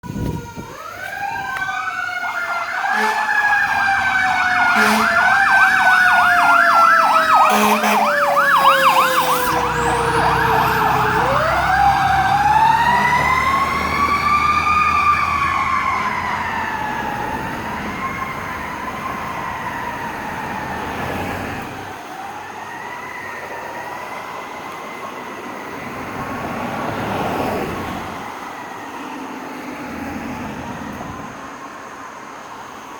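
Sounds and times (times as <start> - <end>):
fire truck siren wailing: 0.0 - 31.4
short horn blasts: 2.9 - 3.3, 4.7 - 5.2, 7.4 - 8.2.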